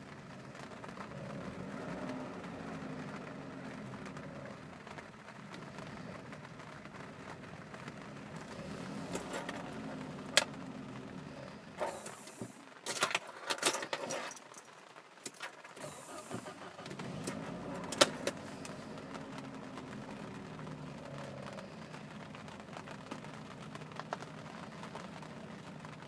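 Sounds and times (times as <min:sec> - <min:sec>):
car engine idling roughly: 0:00.0 - 0:13.2, 0:15.6 - 0:26.0
clicks and rattling handling noises: 0:08.5 - 0:10.6, 0:11.8 - 0:16.5, 0:17.1 - 0:18.5.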